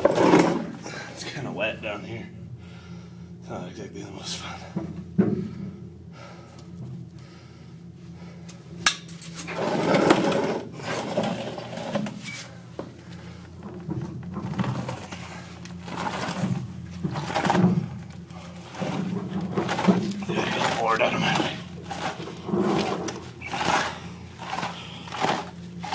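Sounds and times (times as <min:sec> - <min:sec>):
person crawling scraping: 0:00.0 - 0:01.1, 0:09.2 - 0:25.9
steady low hum: 0:00.0 - 0:25.9.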